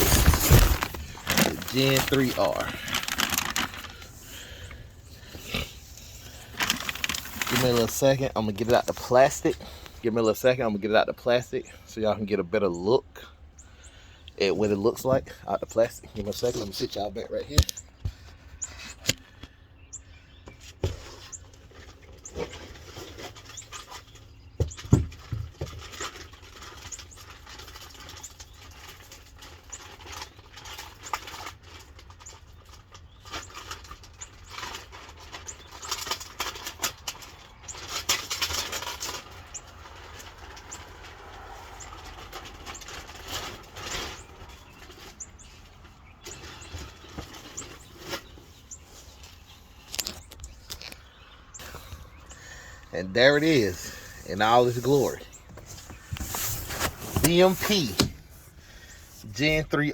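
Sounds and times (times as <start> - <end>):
handling clicks and knocks: 0.0 - 4.8, 6.4 - 9.0
plastic wrapping crinkling: 0.0 - 9.1.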